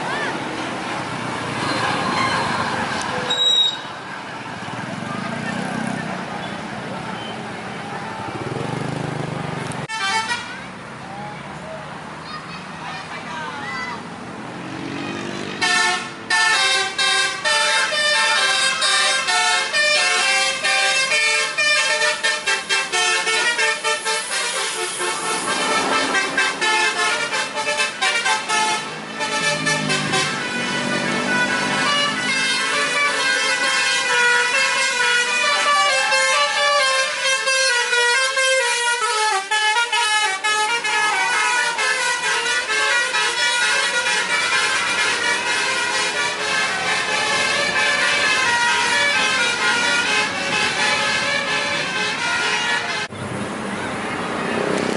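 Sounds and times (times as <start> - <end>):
multi-tone air horns playing tune: 9.9 - 10.6, 15.6 - 53.1.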